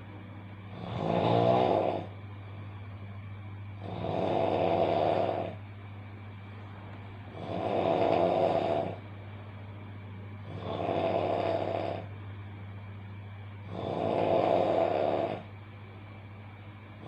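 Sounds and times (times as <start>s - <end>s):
steady low hum: 0.0s - 17.0s
person snoring loudly: 0.7s - 2.1s, 3.8s - 5.6s, 7.3s - 9.0s, 10.4s - 12.1s, 13.6s - 15.5s.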